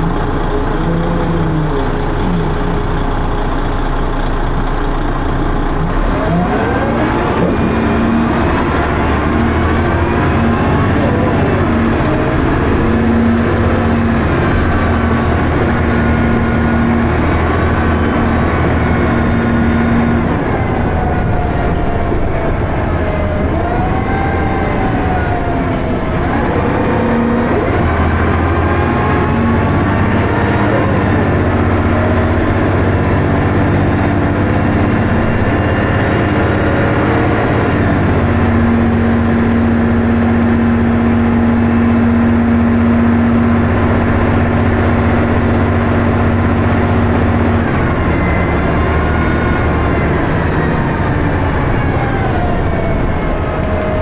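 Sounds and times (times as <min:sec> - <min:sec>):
bus diesel engine running: 0:00.0 - 0:54.0
gearbox whining: 0:00.0 - 0:54.0.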